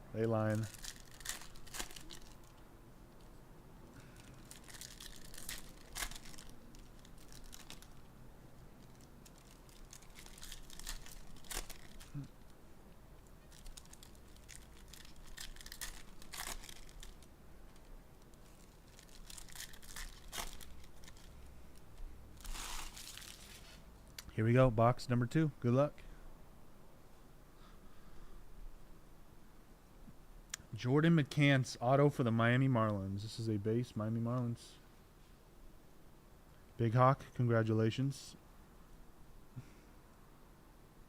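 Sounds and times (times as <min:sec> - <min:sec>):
plastic packaging crinkling and tearing: 0:00.5 - 0:02.6, 0:04.0 - 0:08.1, 0:08.8 - 0:12.5, 0:13.4 - 0:21.4, 0:22.4 - 0:23.8.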